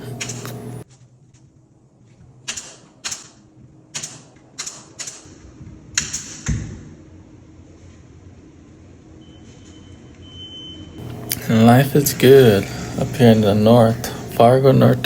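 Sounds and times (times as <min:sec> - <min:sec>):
staple gun firing: 0:02.5 - 0:03.4, 0:04.0 - 0:05.3, 0:06.0 - 0:06.5.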